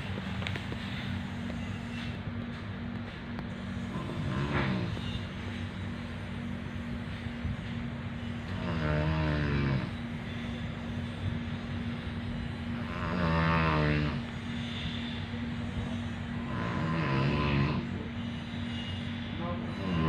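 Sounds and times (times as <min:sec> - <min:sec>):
steady background hum: 0:00.0 - 0:20.0
person snoring: 0:03.9 - 0:05.0, 0:08.5 - 0:10.0, 0:12.8 - 0:14.3, 0:16.4 - 0:17.9, 0:19.7 - 0:20.0.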